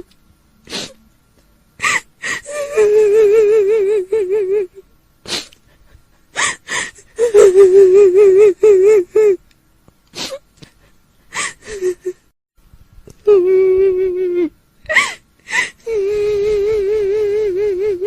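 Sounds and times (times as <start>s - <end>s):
woman sobbing: 1.8s - 9.4s, 10.2s - 12.3s, 13.2s - 18.0s
woman wailing: 1.9s - 4.8s.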